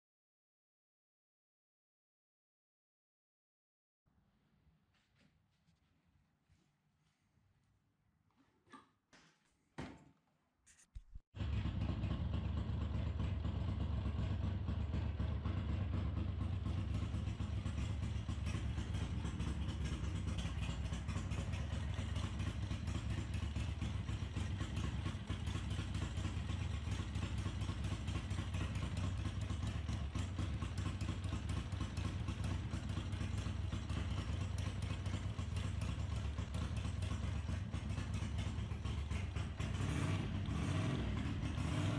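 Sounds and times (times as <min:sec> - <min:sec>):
motorcycle engine running: 0:11.0 - 0:41.9.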